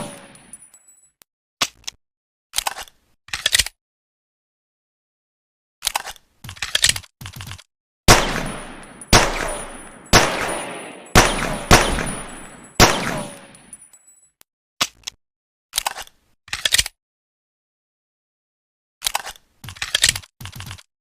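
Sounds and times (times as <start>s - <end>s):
pistol gunshots: 0.0s - 0.3s, 8.1s - 13.6s.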